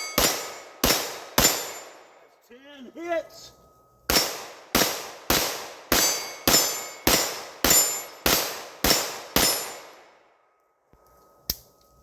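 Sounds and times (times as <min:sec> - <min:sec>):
gunshots with echo: 0:00.0 - 0:02.1, 0:04.1 - 0:10.0.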